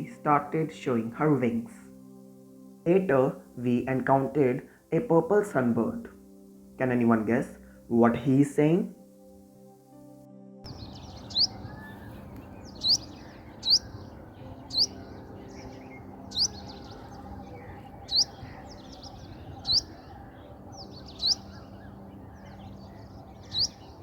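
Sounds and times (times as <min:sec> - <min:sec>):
bird calling sharp rising note: 0:10.7 - 0:24.0.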